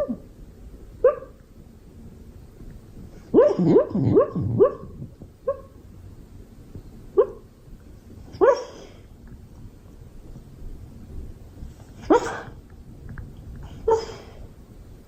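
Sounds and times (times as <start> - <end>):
dog barking: 1.0 - 1.4, 3.3 - 5.8, 7.2 - 7.5, 8.4 - 8.9, 12.1 - 12.6, 13.8 - 14.2.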